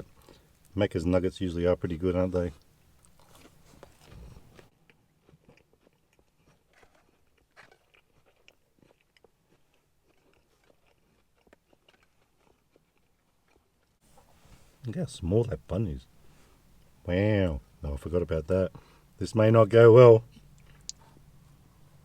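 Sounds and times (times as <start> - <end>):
faint close-up chewing: 0.0 - 0.8, 2.4 - 14.6, 20.2 - 21.4.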